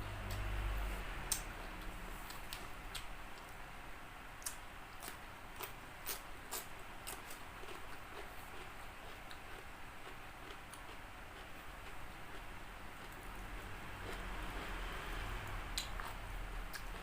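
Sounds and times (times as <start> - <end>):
chewing crispy chicken: 4.4 - 17.0.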